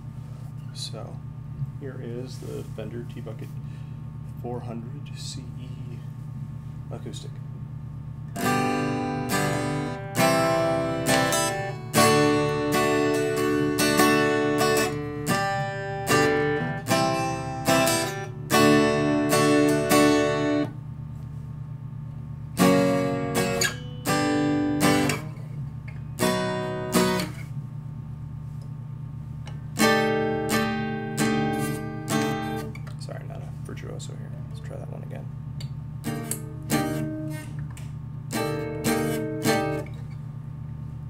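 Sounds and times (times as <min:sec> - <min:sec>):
steady low hum: 0:00.0 - 0:41.0
acoustic guitar strumming: 0:08.3 - 0:20.8, 0:22.5 - 0:27.7, 0:29.5 - 0:33.1, 0:36.0 - 0:40.2.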